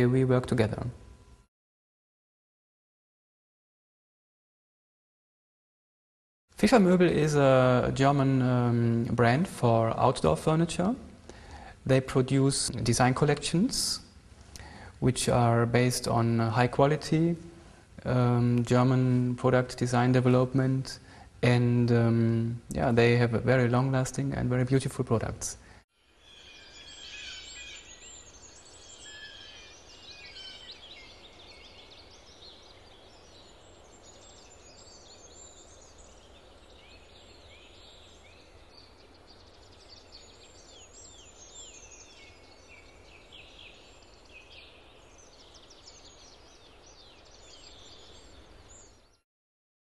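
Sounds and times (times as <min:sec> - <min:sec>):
small birds chirping: 0:22.0 - 0:49.2.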